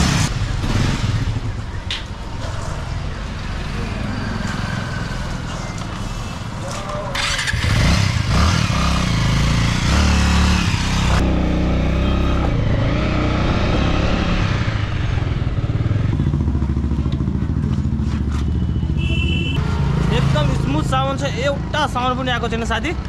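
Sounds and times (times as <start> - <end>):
motorcycle engine running: 7.2 - 19.0.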